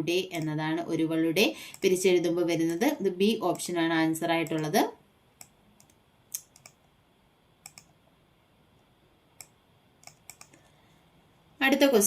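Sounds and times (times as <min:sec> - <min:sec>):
computer mouse clicks: 0:01.7 - 0:01.9, 0:04.4 - 0:04.7, 0:05.4 - 0:06.9, 0:07.6 - 0:08.0, 0:09.4 - 0:10.7.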